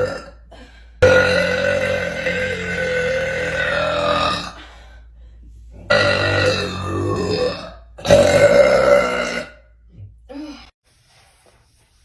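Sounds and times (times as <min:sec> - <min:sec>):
girl burping: 0:00.0 - 0:00.4, 0:01.0 - 0:04.6, 0:05.9 - 0:09.6.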